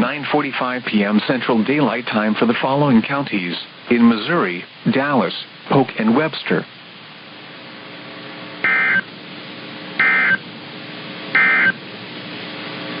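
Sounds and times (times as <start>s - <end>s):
steady hiss: 0.0s - 13.0s
digital data tone bursts: 8.6s - 9.1s, 10.0s - 10.4s, 11.4s - 11.8s.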